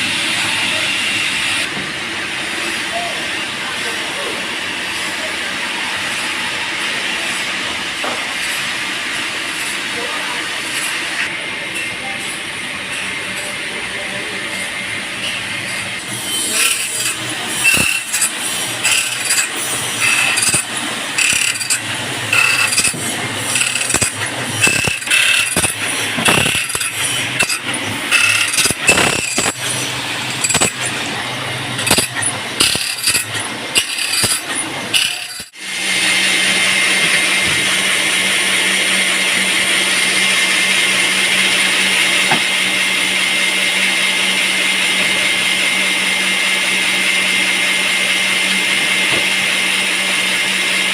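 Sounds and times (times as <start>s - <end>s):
band saw running: 0.0s - 50.9s
machine hum: 0.0s - 50.9s
machinery clanks and knocks: 15.2s - 35.6s, 42.0s - 42.7s, 48.8s - 49.5s.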